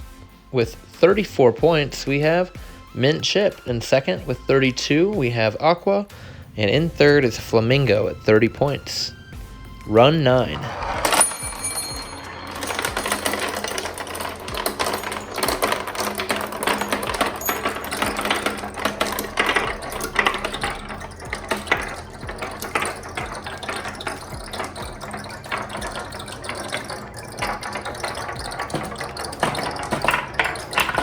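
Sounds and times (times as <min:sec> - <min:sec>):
marbles clattering down a track: 0:09.8 - 0:31.0.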